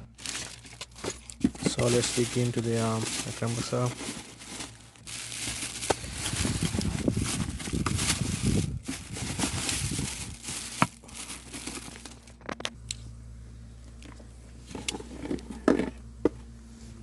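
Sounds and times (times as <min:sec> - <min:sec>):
packaging crinkling and rustling: 0:00.0 - 0:12.8.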